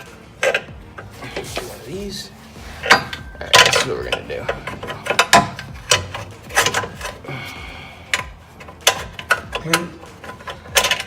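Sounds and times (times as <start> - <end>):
metal tools clinking: 2.8 - 7.2, 8.1 - 11.0.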